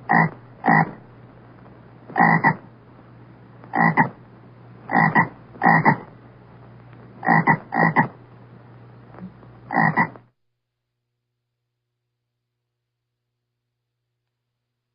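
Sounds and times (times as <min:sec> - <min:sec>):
frog croaking: 0:00.0 - 0:01.0, 0:02.1 - 0:02.7, 0:03.7 - 0:04.2, 0:04.9 - 0:06.1, 0:07.2 - 0:08.2, 0:09.7 - 0:10.3
low hum: 0:00.0 - 0:10.4.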